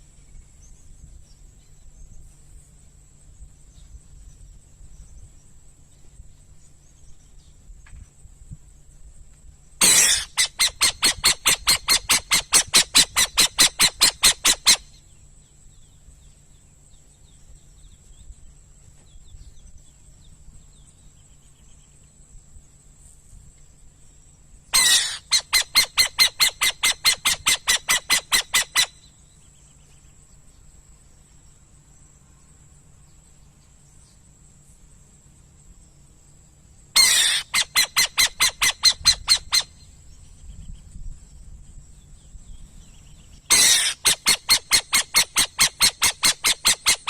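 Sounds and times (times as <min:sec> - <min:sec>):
owl calling harsh notes: 0:09.8 - 0:14.9, 0:24.8 - 0:29.0, 0:37.0 - 0:39.8, 0:43.5 - 0:47.0.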